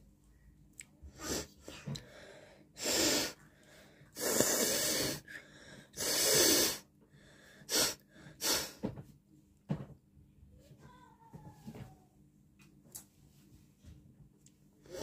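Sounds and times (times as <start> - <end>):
person blowing air through nose: 1.1 - 1.6, 2.8 - 3.4, 4.2 - 5.3, 6.0 - 6.8, 7.7 - 8.8.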